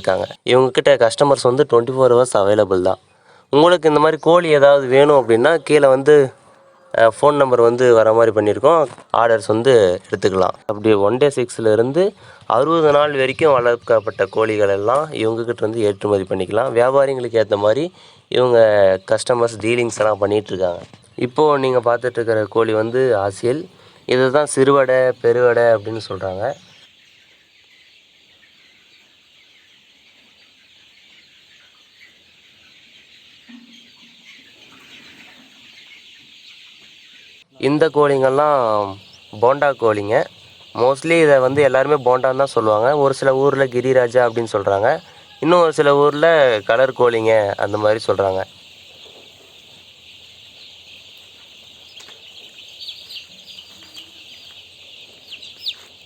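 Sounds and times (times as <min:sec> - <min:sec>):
chickens chirping: 0:00.0 - 0:56.0
chickens clucking: 0:00.0 - 0:56.0
steady high hiss: 0:11.1 - 0:26.8, 0:37.4 - 0:56.0.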